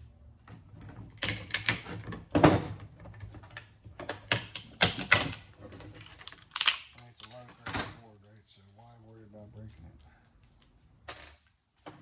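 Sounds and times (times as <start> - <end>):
components snapping off circuit board: 6.5 - 7.4.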